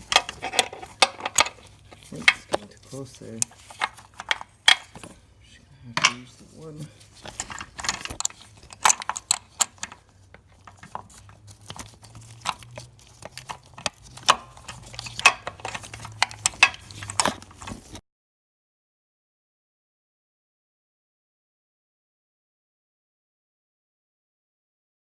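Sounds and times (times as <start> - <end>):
metal tools clinking: 0.0 - 5.2, 5.9 - 18.0.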